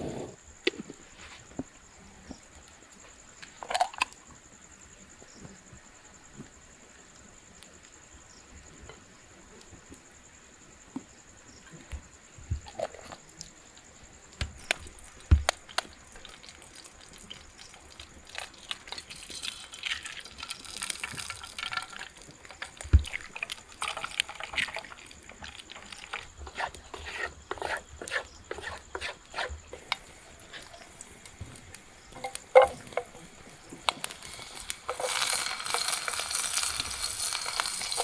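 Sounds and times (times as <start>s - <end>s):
insect trill: 0.0s - 38.0s
water pouring and splashing: 15.6s - 26.5s, 34.0s - 38.0s.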